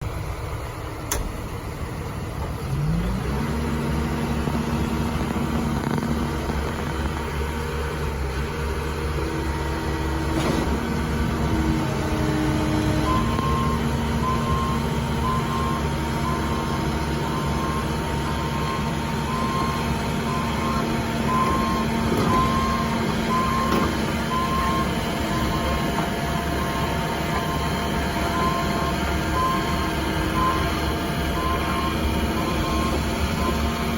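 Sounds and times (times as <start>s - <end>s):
excavator diesel engine: 0.0s - 33.9s
travel alarm beeping: 13.0s - 25.8s, 26.5s - 29.8s, 30.4s - 30.8s, 31.4s - 33.7s.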